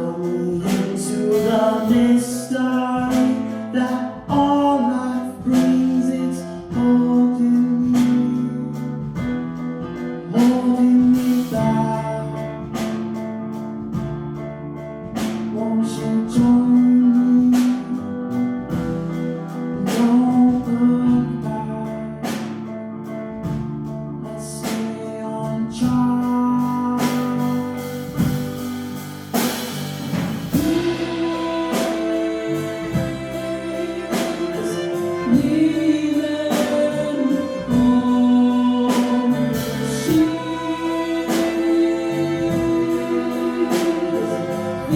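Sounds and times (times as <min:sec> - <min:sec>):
person singing: 0:00.0 - 0:13.2, 0:15.1 - 0:22.7, 0:24.1 - 0:28.6, 0:30.5 - 0:44.9
held instrumental notes: 0:00.0 - 0:44.9.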